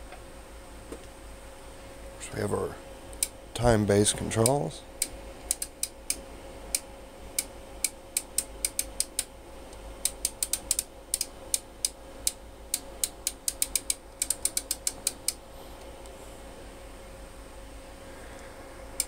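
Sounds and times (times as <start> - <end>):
rotary switch clicking: 3.1 - 3.4, 4.4 - 15.4.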